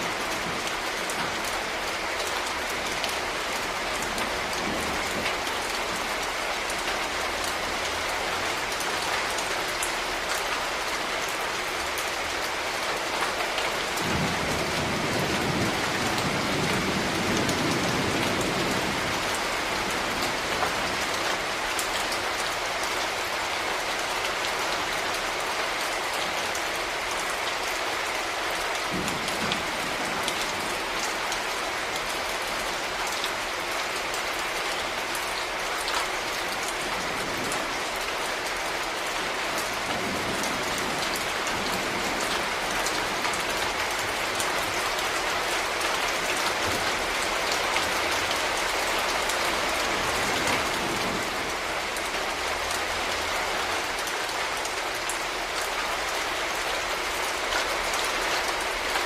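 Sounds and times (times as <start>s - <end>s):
dense rain falling: 0.0s - 59.0s
distant thunder rumbling: 28.9s - 31.0s.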